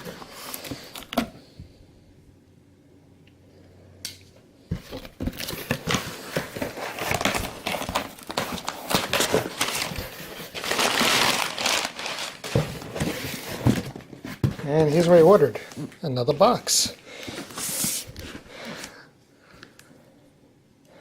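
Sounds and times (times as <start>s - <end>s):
packing material crinkling: 4.9s - 16.6s.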